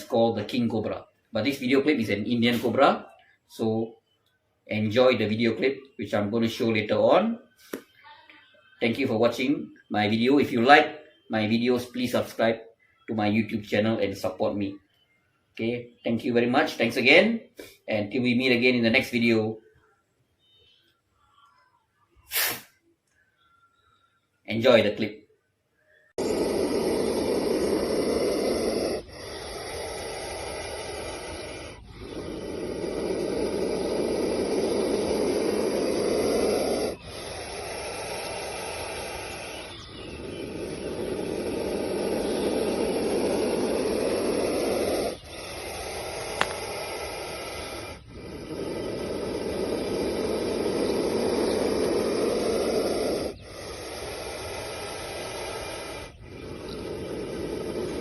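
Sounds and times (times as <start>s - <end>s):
snake hissing: 0.0s - 3.1s, 22.2s - 22.8s, 25.9s - 58.0s.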